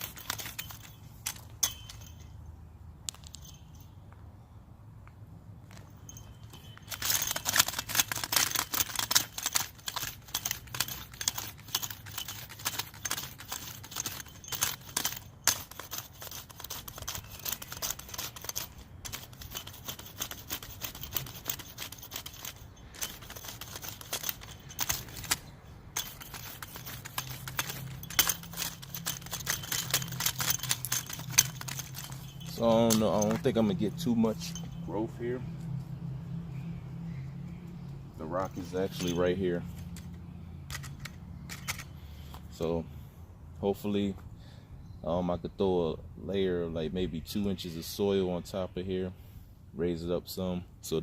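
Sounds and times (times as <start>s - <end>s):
garden tool scraping soil: 0.0s - 1.5s, 6.6s - 34.7s.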